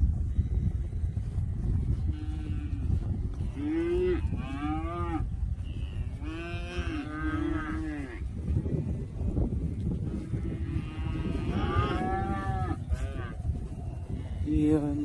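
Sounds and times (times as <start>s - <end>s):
steady low rumble: 0.0s - 15.0s
cattle mooing: 3.5s - 8.2s, 10.3s - 13.4s.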